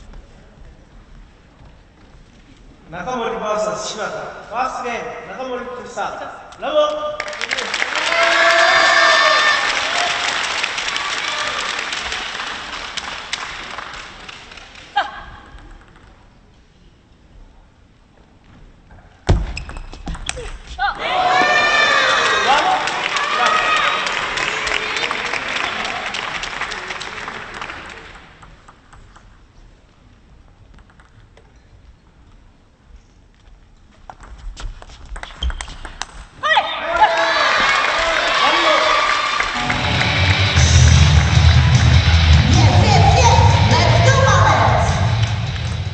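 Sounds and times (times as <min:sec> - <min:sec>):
spectators applauding: 0:07.2 - 0:15.0, 0:21.2 - 0:28.5, 0:36.9 - 0:42.6.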